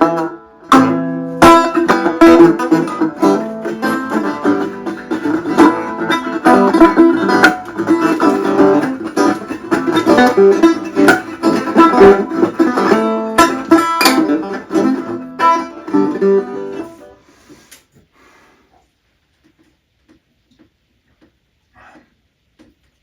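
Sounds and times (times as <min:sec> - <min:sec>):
resonator guitar picking: 0:00.0 - 0:17.2.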